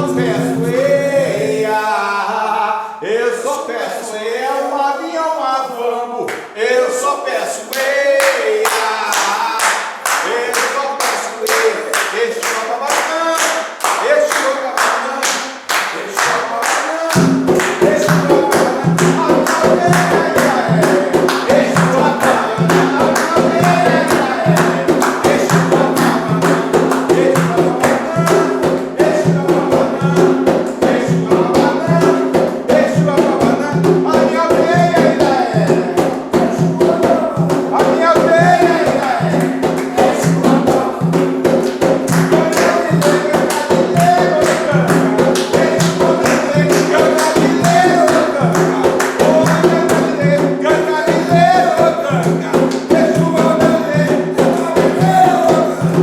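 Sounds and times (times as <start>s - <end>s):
fast hand drumming: 0.0s - 1.9s, 15.7s - 56.0s
jingling percussion: 0.0s - 2.0s, 16.0s - 56.0s
person chanting: 0.0s - 56.0s.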